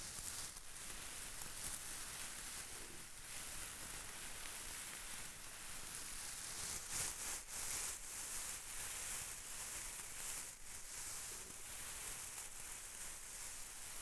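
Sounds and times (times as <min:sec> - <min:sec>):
soft high-pitched hiss: 0:00.0 - 0:14.0.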